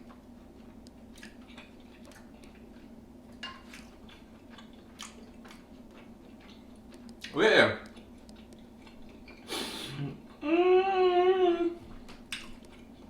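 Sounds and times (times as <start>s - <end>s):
person chewing and smacking: 0.0s - 9.5s, 10.2s - 10.4s, 11.8s - 13.0s
steady low hum: 0.0s - 13.0s
sharp wet clicks: 0.8s - 2.7s, 3.4s - 5.6s, 6.4s - 9.4s.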